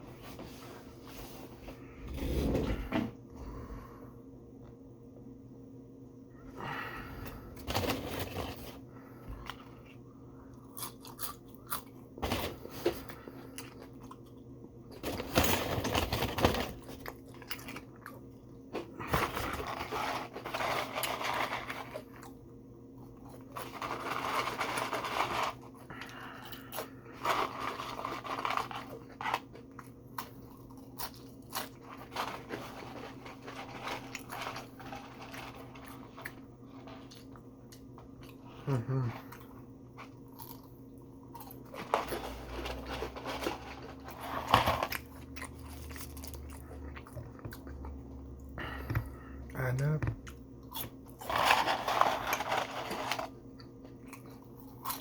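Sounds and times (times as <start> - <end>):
steady low hum: 0.0 - 55.0
person chewing and crunching: 9.4 - 15.4, 16.6 - 22.4, 23.0 - 55.0.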